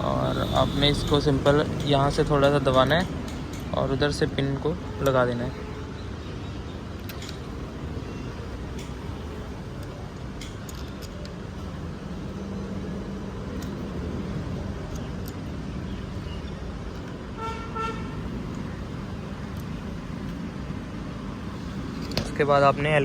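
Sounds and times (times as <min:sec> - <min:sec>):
traffic rumble: 0:00.0 - 0:23.0
vehicle horn honking: 0:00.2 - 0:01.1, 0:17.4 - 0:18.3.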